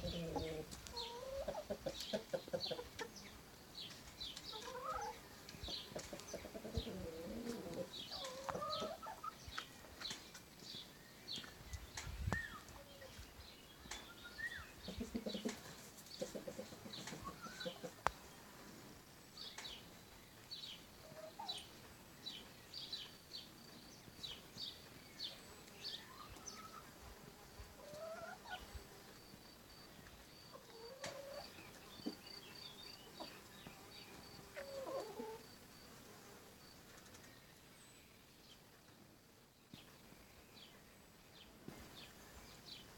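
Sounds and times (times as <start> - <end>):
chickens clucking: 0.0 - 10.4, 14.7 - 18.8, 21.0 - 22.5, 25.9 - 27.0, 27.7 - 29.3, 30.1 - 32.4, 33.0 - 35.6.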